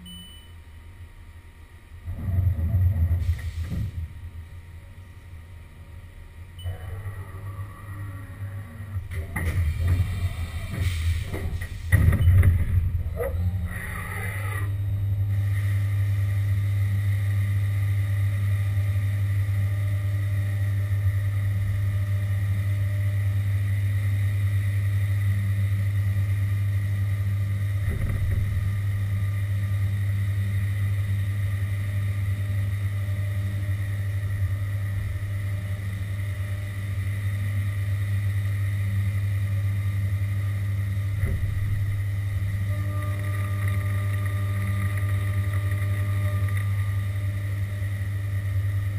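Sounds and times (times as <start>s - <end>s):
high whine: 0.0s - 48.9s
milling machine low hum: 0.0s - 48.9s
higher tone: 6.6s - 9.0s.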